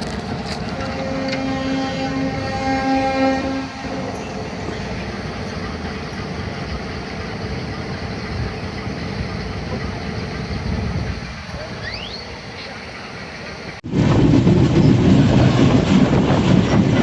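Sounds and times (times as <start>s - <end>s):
train horn: 0.0s - 5.6s
train running on rails: 0.0s - 17.0s.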